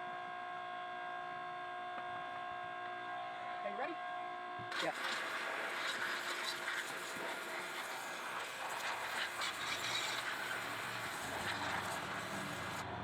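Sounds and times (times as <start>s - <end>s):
compressed air hissing from nozzle: 5.0s - 12.8s.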